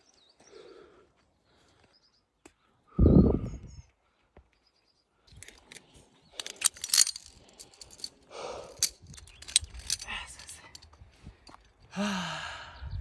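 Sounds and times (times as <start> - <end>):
rustling: 6.4 - 10.8.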